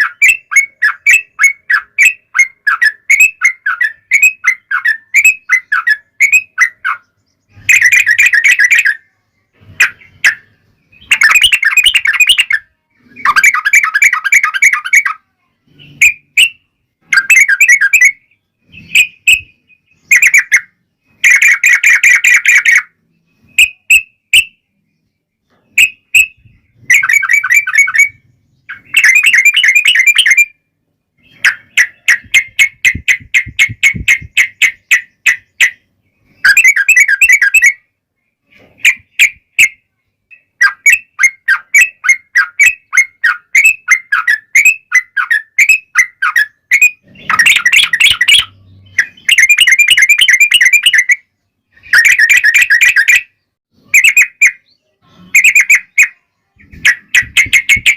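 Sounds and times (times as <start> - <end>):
short bird chirps: 0.0 - 57.9
bird singing bubbling notes: 25.7 - 30.6, 38.8 - 53.4.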